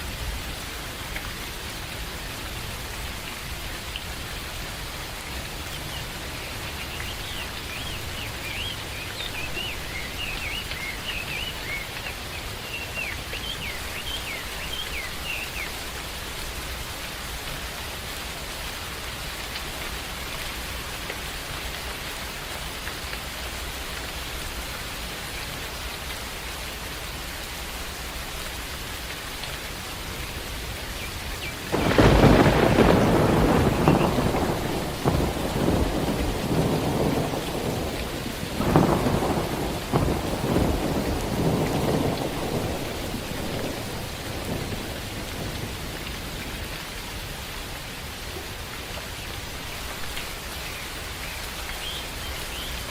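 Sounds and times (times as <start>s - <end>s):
steady rain: 0.0s - 52.9s
thunder clap and rumble: 31.7s - 46.7s.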